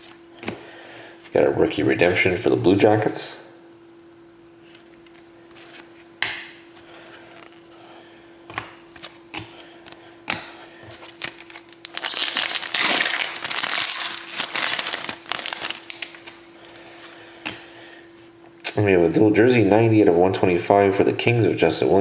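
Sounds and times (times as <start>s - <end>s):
card pack wrapper tearing: 7.2s - 7.7s, 11.0s - 16.4s.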